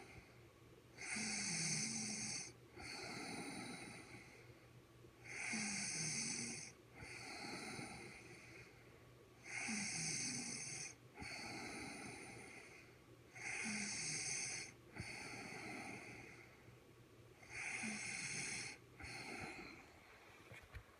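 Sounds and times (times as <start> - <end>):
woman snoring: 1.0 - 4.2, 5.3 - 8.3, 9.5 - 12.6, 13.4 - 16.3, 17.4 - 19.8.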